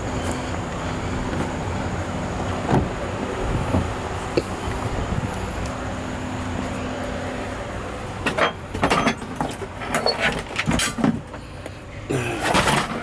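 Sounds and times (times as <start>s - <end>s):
car parts knocking and clattering: 0.0s - 4.9s, 8.0s - 11.8s, 12.4s - 13.0s
steady running hum: 0.0s - 13.0s.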